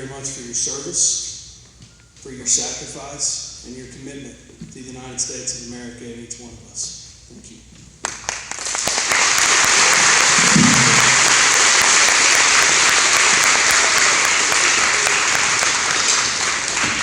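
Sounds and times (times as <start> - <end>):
crowd applauding: 8.0 - 17.0.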